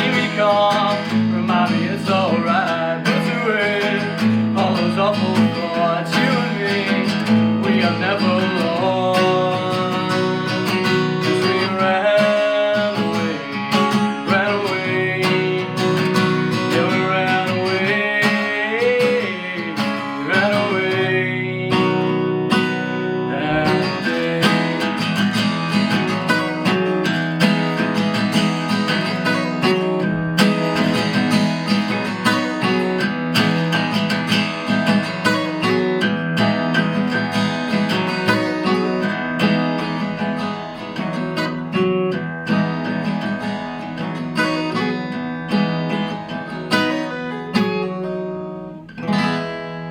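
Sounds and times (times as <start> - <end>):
person singing: 0.0 - 25.7
acoustic guitar strumming: 0.0 - 49.9.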